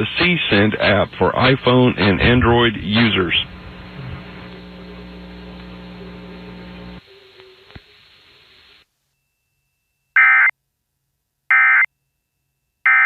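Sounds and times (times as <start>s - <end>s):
electrical hum and hiss: 0.0s - 9.1s.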